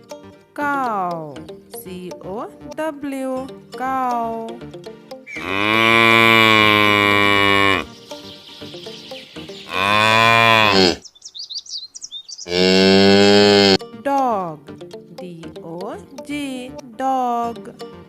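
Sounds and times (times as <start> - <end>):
cow mooing: 5.3 - 7.9, 9.7 - 11.0, 12.5 - 13.8.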